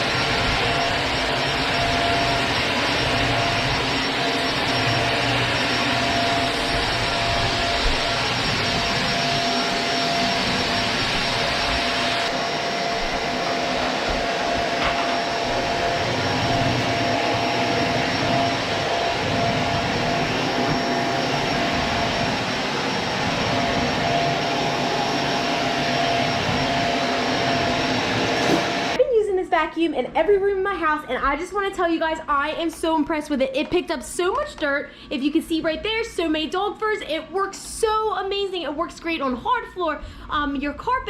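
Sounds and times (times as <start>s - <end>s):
vacuum cleaner running: 0.0s - 29.0s.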